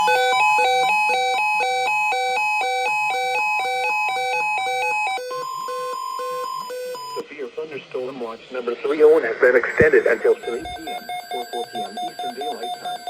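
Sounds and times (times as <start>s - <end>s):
electronic alert beeps: 9.8s - 13.0s.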